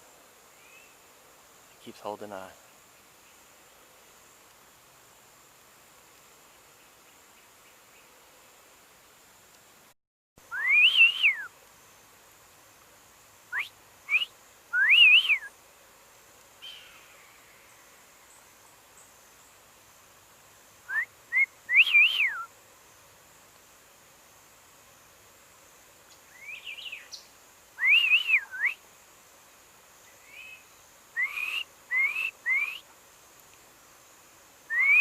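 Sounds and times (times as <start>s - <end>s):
person whistling a call: 10.5s - 11.5s, 13.6s - 15.5s, 20.9s - 22.5s, 27.8s - 28.8s, 31.2s - 32.8s, 34.7s - 35.0s.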